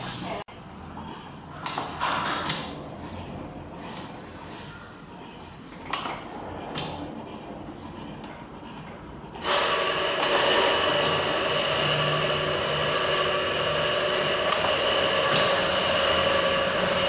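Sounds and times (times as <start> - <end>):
packaging machine running: 9.3 - 17.0.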